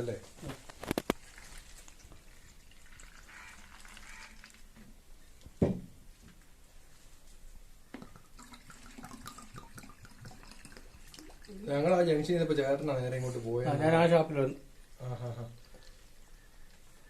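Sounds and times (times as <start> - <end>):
liquid trickling into a container: 0.8 - 4.8, 8.0 - 13.0, 15.0 - 16.4
knocks: 5.6 - 6.0.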